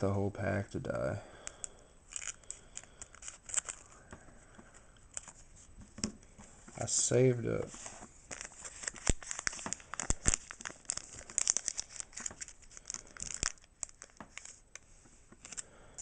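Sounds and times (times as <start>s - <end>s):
foil wrapper crinkling and tearing: 1.5s - 4.0s, 8.3s - 14.8s.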